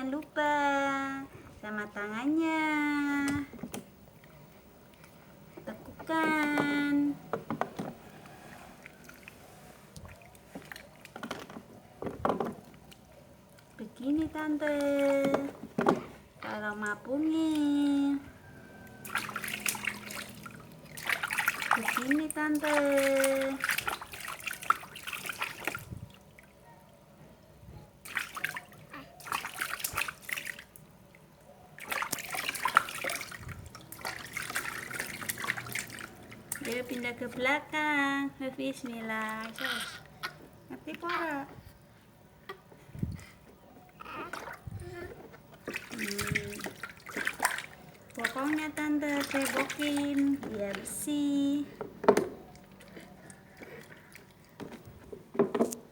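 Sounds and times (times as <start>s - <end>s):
wet squishes of scrubbing skin: 18.7s - 26.5s, 28.0s - 30.8s, 31.8s - 37.4s, 45.6s - 50.9s, 52.4s - 54.7s
water pouring and splashing: 18.9s - 26.6s, 28.0s - 30.9s, 31.8s - 37.4s, 45.6s - 51.5s.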